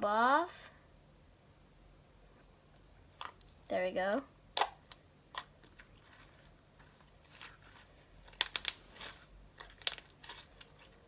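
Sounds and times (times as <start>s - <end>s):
small crackling pops: 7.3s - 11.0s.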